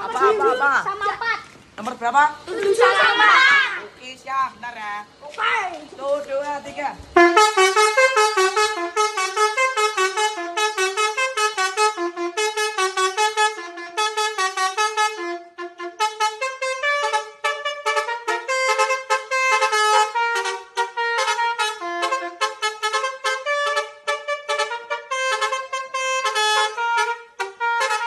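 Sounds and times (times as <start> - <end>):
musical bus horn tune: 7.2 - 28.0.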